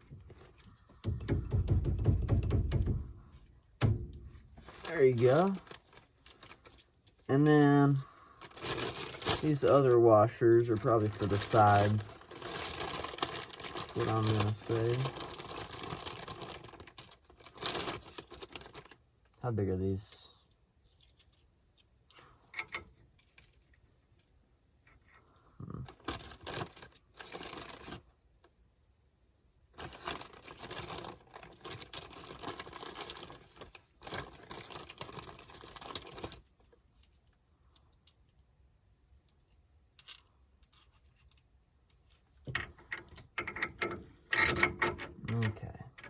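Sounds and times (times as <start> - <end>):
metal washers clinking and rattling: 1.0 - 23.8, 25.9 - 28.0, 29.8 - 38.4, 39.9 - 46.0.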